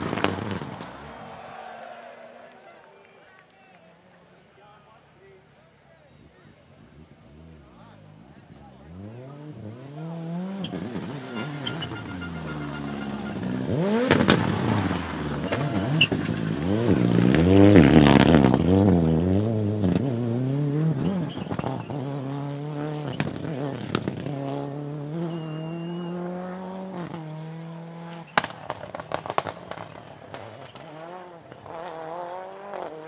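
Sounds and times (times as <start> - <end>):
rally car engine revving: 0.0 - 1.2, 6.8 - 33.0
sharp exhaust pops: 10.6 - 19.0, 23.0 - 24.4, 28.3 - 31.7.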